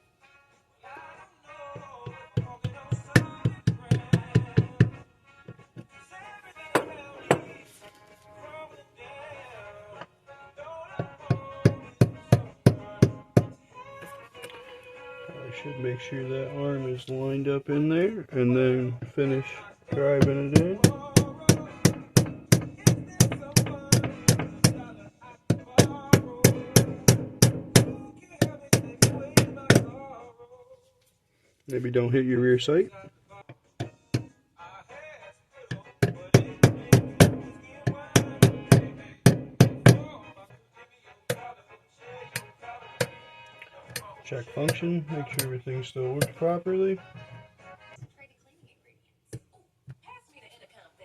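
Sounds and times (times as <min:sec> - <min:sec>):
background music: 0:00.0 - 0:49.5
hammer striking metal punch: 0:06.8 - 0:07.6, 0:20.2 - 0:25.0.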